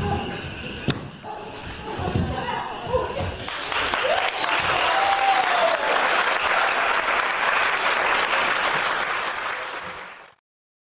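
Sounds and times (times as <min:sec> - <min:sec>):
audience applauding: 0:03.4 - 0:10.4.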